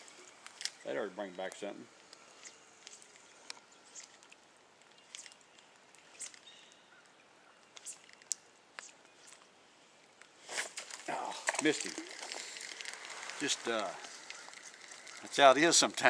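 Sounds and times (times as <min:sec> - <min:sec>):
faint outdoor background hiss: 0:00.0 - 0:16.0
small sharp clicks: 0:01.4 - 0:13.4.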